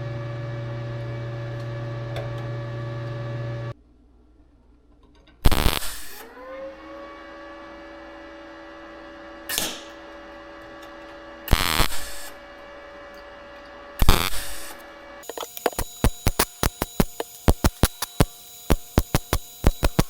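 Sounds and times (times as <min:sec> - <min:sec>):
welder hum: 0:00.0 - 0:03.8, 0:05.4 - 0:20.0
welding arc bursts: 0:05.4 - 0:06.2, 0:11.5 - 0:12.4, 0:14.0 - 0:20.0.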